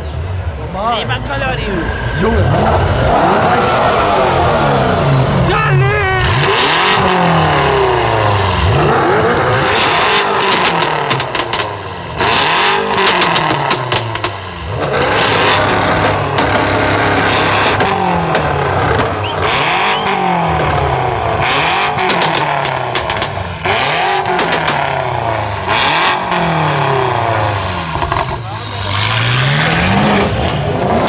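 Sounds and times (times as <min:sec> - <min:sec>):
car engine revving: 0:00.0 - 0:31.0
exhaust crackles and pops: 0:08.7 - 0:26.3, 0:27.8 - 0:28.9.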